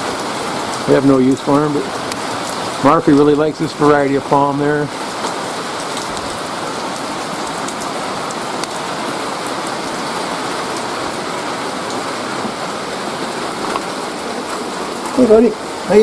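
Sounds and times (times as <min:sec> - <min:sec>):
rain shower hiss: 0:00.0 - 0:16.0
raindrops ticking: 0:00.0 - 0:16.0.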